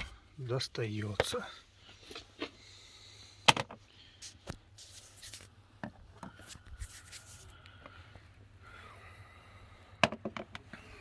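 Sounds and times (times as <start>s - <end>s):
rustling scrapes: 4.2s - 5.5s, 6.4s - 7.5s.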